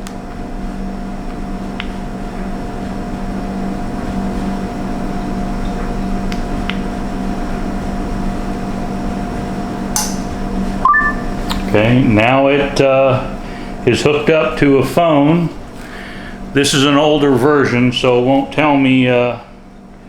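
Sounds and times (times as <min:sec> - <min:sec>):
machine hum: 0:00.0 - 0:20.0.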